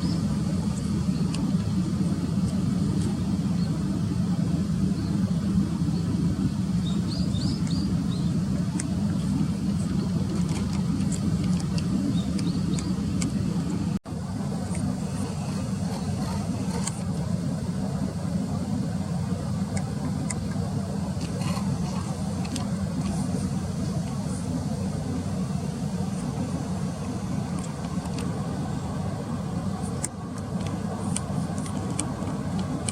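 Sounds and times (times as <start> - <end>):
small birds chirping: 0.0 - 1.9, 5.9 - 14.0
road traffic rumble: 0.0 - 32.9.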